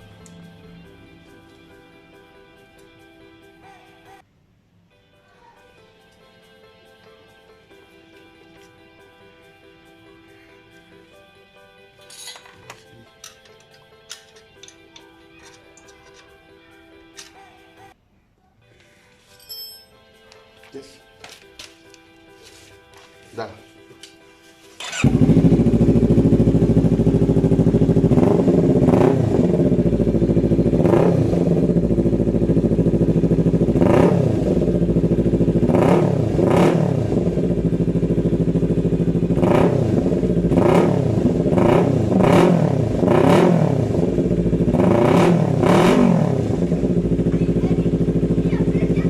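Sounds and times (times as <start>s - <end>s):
motorcycle engine revving: 24.8s - 49.0s.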